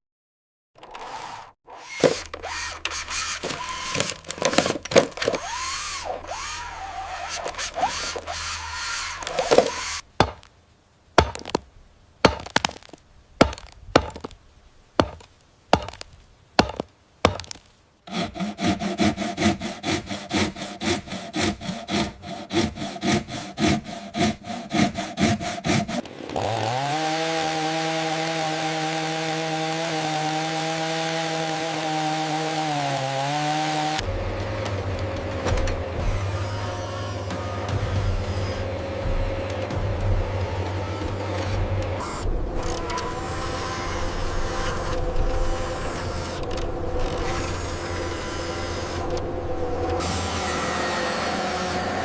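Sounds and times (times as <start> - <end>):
wood being sawn: 0.8 - 10.5, 11.2 - 11.6, 12.2 - 14.3, 15.0 - 16.0, 16.6 - 52.0
motor whine: 5.2 - 10.0, 34.0 - 52.0.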